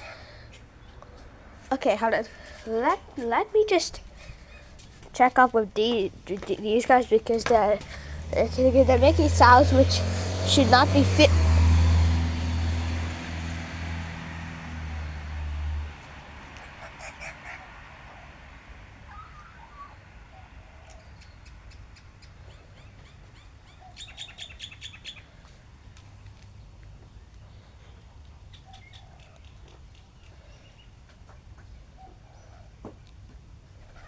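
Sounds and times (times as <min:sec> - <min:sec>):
birds chirping: 0:00.0 - 0:13.7, 0:16.3 - 0:18.2, 0:19.0 - 0:32.7.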